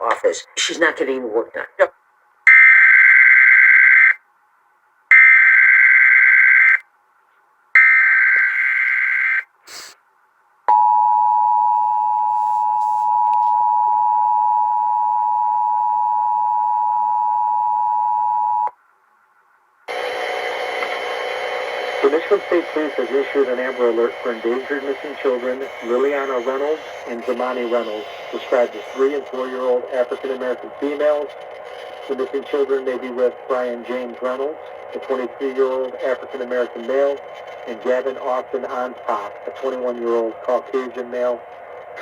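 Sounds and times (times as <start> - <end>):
buzzy data tones: 19.9 - 42.0.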